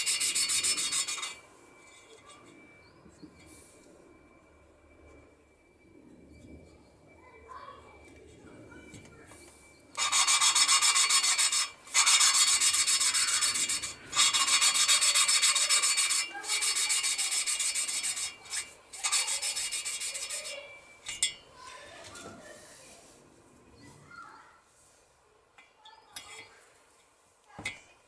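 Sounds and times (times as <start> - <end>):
valve lapping gritty rasping: 0.0 - 1.4, 10.0 - 21.4.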